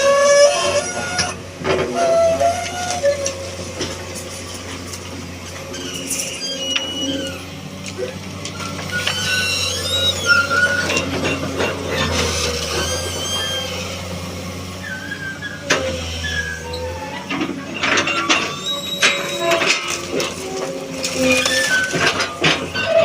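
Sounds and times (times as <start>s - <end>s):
excavator engine running: 0.0s - 23.0s
short high squeals: 5.6s - 7.6s, 8.5s - 14.1s, 14.8s - 17.4s, 18.0s - 20.3s, 21.0s - 23.0s.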